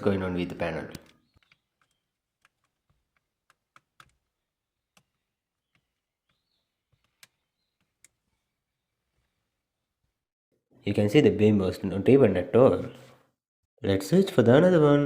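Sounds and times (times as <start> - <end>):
faint clicks and taps of plastic parts: 0.5 - 8.5.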